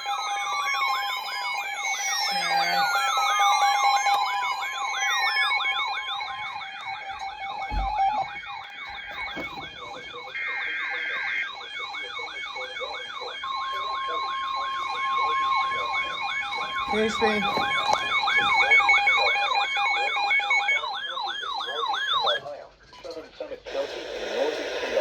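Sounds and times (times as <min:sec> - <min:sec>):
electronic sirens yelping: 0:00.0 - 0:22.5.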